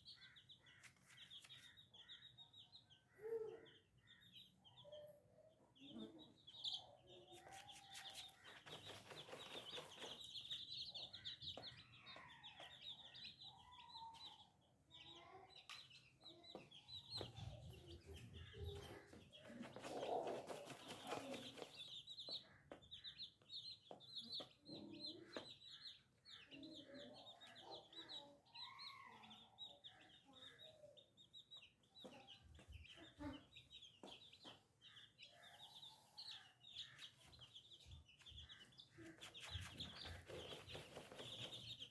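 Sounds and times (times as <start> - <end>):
baby chicks peeping: 0.0 - 41.9
hen clucking: 18.4 - 21.7.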